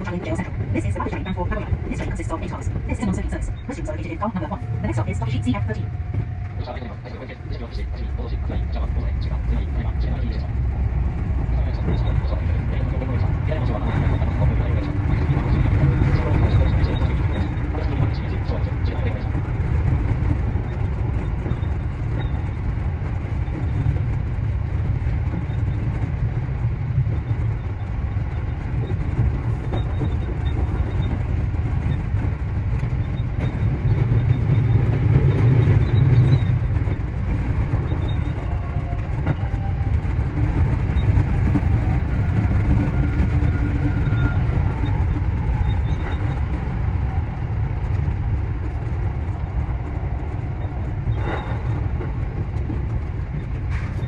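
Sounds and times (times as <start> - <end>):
train wheels rumbling on rail: 0.0 - 54.0.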